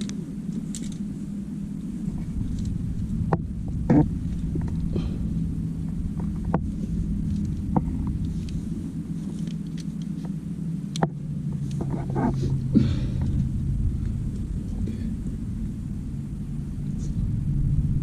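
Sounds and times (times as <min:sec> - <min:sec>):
climbing gear on rock: 0:00.0 - 0:01.1
low engine-like drone: 0:00.0 - 0:18.0.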